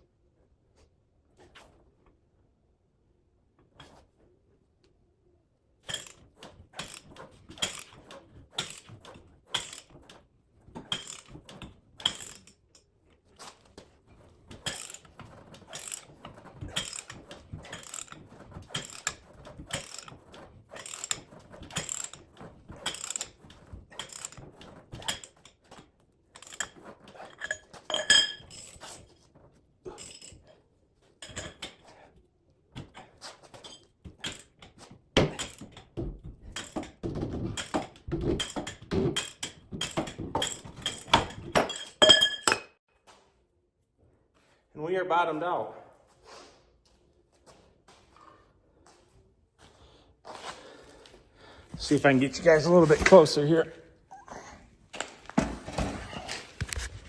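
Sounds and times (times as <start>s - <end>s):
ratchet wrench clicking: 6.8s - 7.9s, 8.6s - 8.9s, 9.5s - 9.9s, 10.9s - 11.3s, 14.6s - 15.1s, 15.7s - 16.1s, 16.8s - 20.1s, 20.7s - 22.2s, 22.8s - 23.3s.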